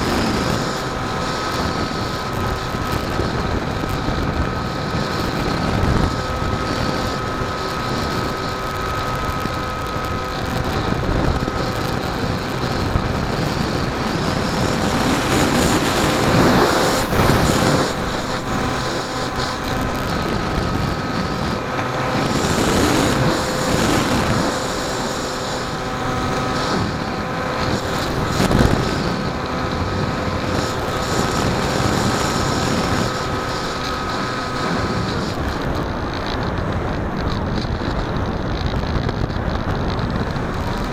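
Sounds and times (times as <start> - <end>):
motor and propeller whine: 0.0 - 40.9.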